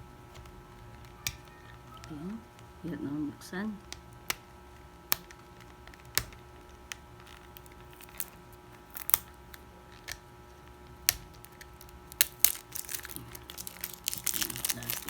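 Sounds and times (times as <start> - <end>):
hands clicking on packaging: 0.3 - 2.8, 3.8 - 15.0.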